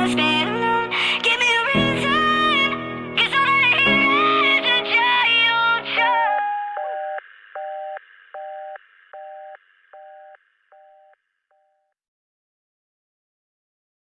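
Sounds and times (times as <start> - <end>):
telephone busy signal: 6.8 - 11.9.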